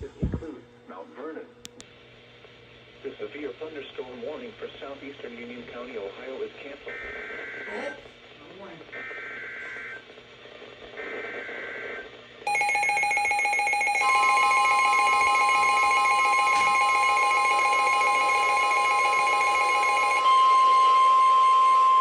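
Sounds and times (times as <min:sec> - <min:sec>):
buzzy many-toned alarm: 0:06.9 - 0:08.0, 0:11.0 - 0:22.0
steady warning tone: 0:12.5 - 0:22.0.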